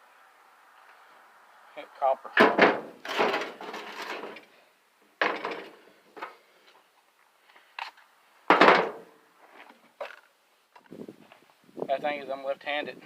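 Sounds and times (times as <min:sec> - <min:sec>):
knocks and clanks on metal motor: 0:02.4 - 0:04.4.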